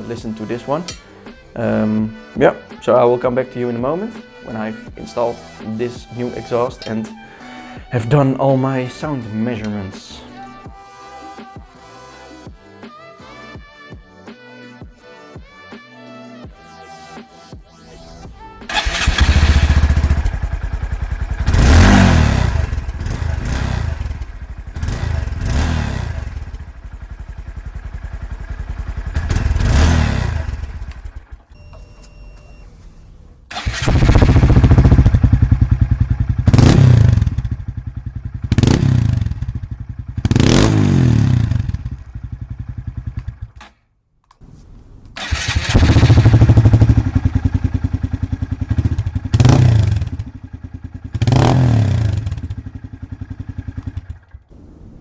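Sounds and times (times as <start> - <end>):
motorcycle engine idling and revving: 18.7 - 31.6, 33.5 - 43.6, 45.2 - 54.5.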